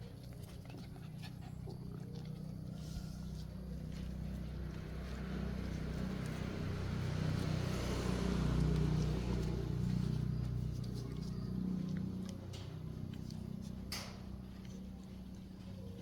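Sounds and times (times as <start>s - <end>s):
vehicle engine running: 2.8s - 16.0s.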